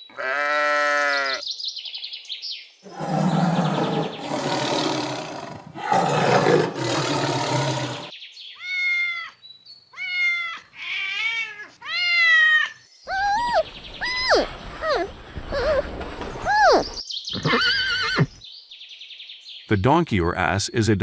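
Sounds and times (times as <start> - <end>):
animal roaring calls: 2.9 - 8.1
high-pitched animal calls: 10.0 - 18.3.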